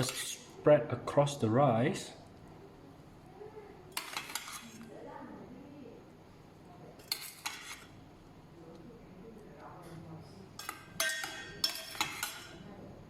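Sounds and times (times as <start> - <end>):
utensil clinking and scraping on plate: 0.0 - 0.5, 3.9 - 4.9, 7.0 - 8.0, 10.6 - 12.6.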